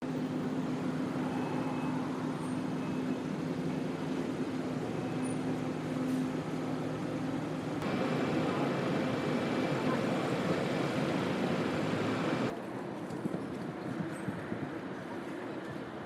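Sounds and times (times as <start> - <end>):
city traffic noise: 0.0 - 16.0
low engine hum: 0.1 - 12.5.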